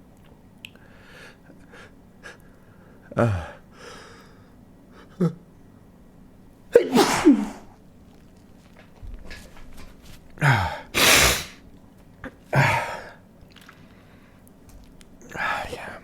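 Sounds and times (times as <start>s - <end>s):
man sneezing: 6.8s - 7.8s, 10.4s - 11.6s.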